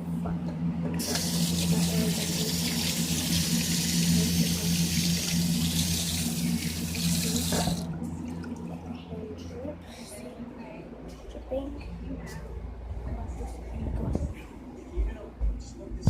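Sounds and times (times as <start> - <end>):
running water: 1.0 - 8.9.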